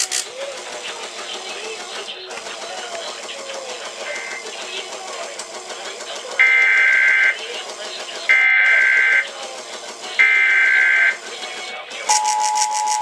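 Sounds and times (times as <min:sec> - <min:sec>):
faint voice on radio: 0:00.0 - 0:13.0
two-tone data burst: 0:12.1 - 0:13.0.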